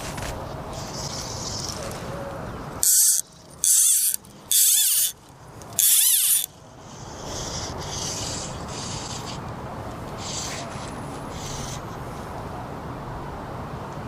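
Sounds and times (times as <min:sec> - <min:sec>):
fishing reel ratcheting: 0:02.8 - 0:08.9.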